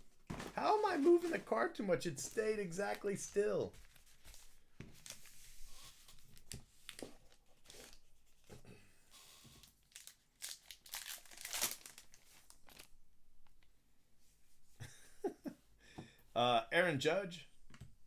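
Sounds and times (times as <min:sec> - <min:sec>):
trading cards crinkling and rustling: 0:00.1 - 0:08.1, 0:09.6 - 0:12.9.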